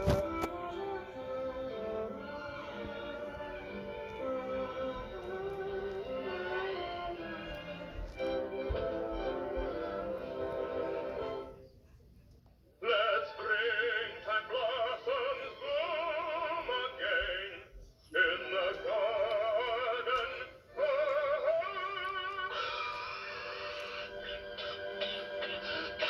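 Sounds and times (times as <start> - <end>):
operatic singing with vibrato: 0.0 - 11.6, 12.8 - 26.0
orchestral accompaniment: 0.0 - 11.6.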